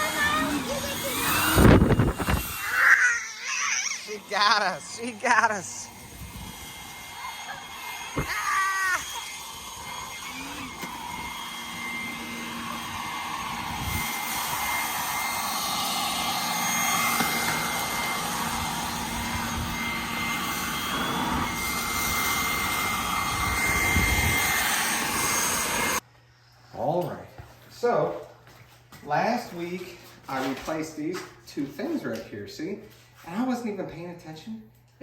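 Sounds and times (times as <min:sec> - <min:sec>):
leaf blower whine and rush: 0:00.0 - 0:26.0.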